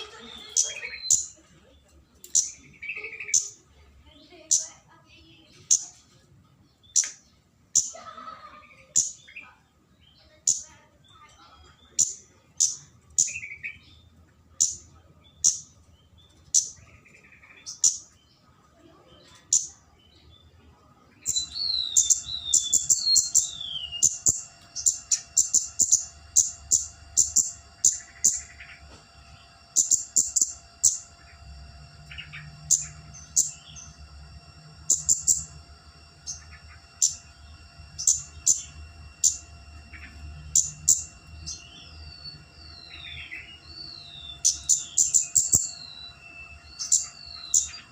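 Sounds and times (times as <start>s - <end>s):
bird giving high chirping calls: 0.0s - 1.4s, 2.2s - 3.7s, 21.2s - 28.9s, 29.7s - 31.4s, 32.0s - 34.0s, 34.8s - 35.6s, 36.2s - 47.9s.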